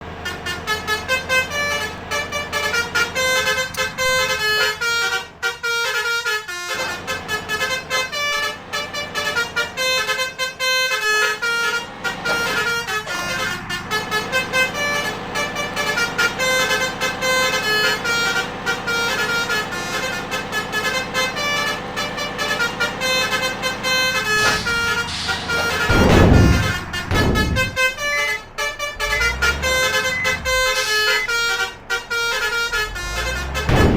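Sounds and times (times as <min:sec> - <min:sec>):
multi-tone bus horns: 0:00.0 - 0:33.9.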